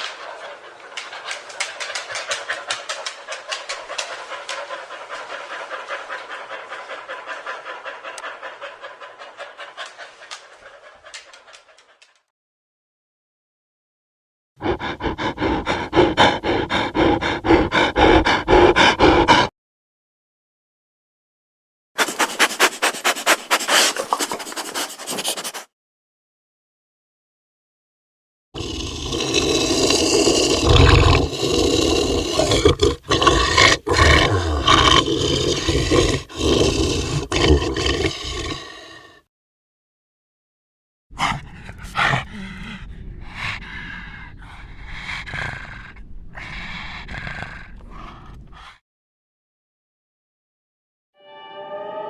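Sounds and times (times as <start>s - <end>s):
dog panting rapidly: 0.0s - 12.3s, 14.6s - 19.5s, 22.0s - 25.7s.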